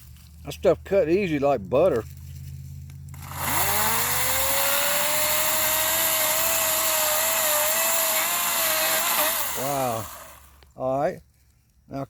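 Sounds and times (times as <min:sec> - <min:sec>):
chainsaw revving and cutting wood: 0:03.1 - 0:10.7.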